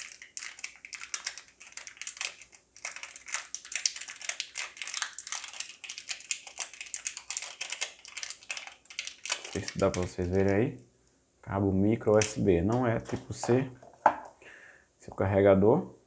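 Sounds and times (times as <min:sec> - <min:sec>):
plastic packaging crinkling: 0:00.0 - 0:10.7.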